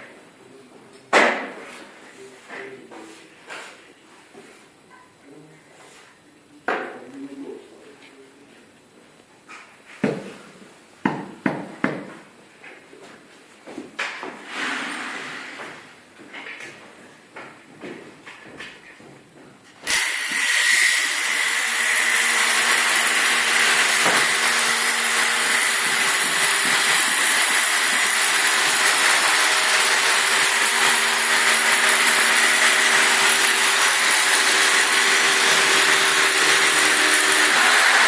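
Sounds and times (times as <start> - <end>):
power tool motor whining: 19.9 - 38.0.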